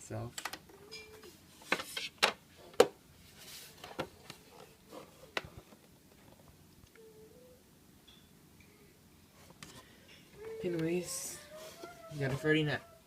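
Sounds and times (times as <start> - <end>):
clicks and knocks of handling: 0.3 - 3.0.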